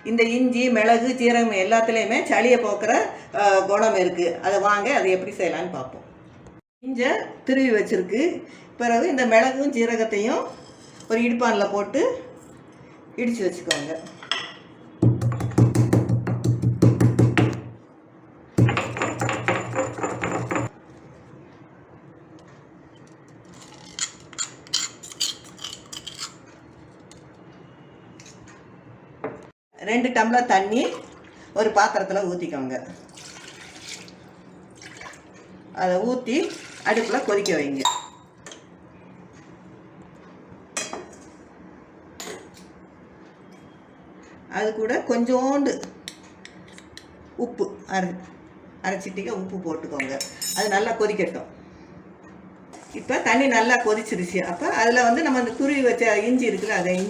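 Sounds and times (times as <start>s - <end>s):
pestle striking mortar: 15.0s - 17.7s, 18.6s - 20.7s
metallic clinks of kitchen utensils: 50.2s - 50.8s.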